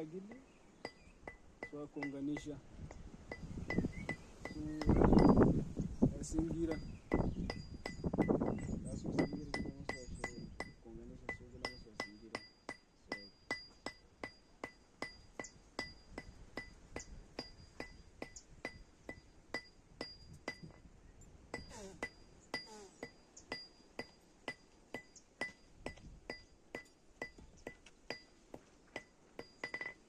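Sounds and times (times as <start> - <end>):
hammer beating metal on anvil: 9.2 - 20.8, 29.0 - 30.0.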